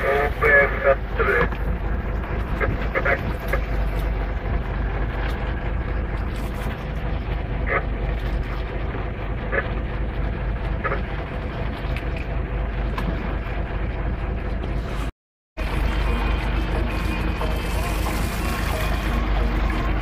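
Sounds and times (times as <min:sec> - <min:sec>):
boat engine running: 0:00.0 - 0:20.0.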